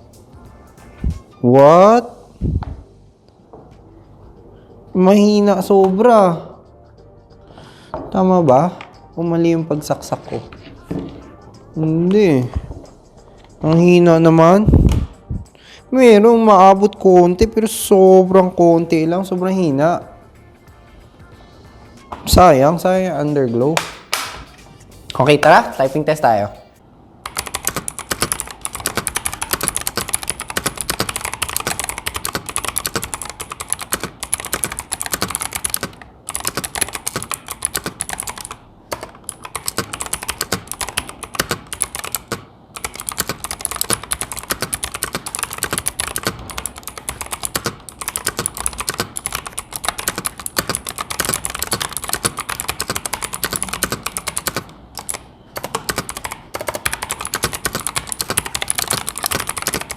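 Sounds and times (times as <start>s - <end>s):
mechanical keyboard typing: 22.4s - 24.5s, 27.2s - 59.9s.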